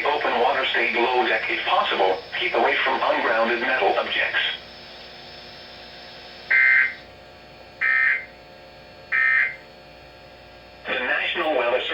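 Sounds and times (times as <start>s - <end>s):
digital data tone bursts: 0.0s - 7.1s, 7.8s - 8.3s, 9.1s - 9.6s.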